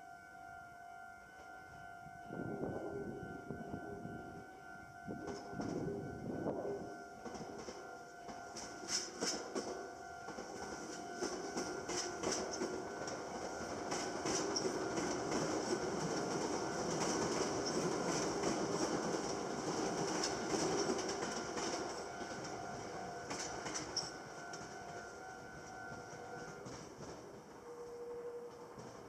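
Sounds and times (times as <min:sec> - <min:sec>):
level crossing warning bell: 0:00.0 - 0:29.0
train wheels clacking over rail joints: 0:07.2 - 0:27.7.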